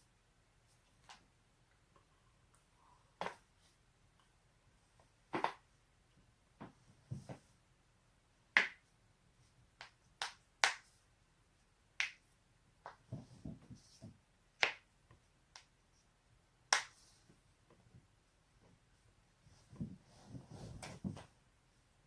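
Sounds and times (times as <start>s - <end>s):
rustling of movement: 19.4s - 21.4s.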